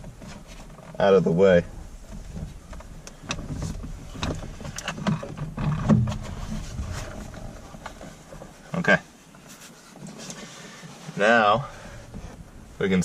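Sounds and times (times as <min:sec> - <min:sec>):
plastic rustling and rubbing: 0:01.9 - 0:12.5.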